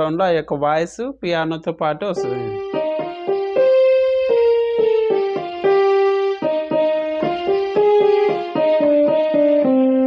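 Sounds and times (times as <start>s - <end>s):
keyboard playing slow melody: 2.2s - 10.0s.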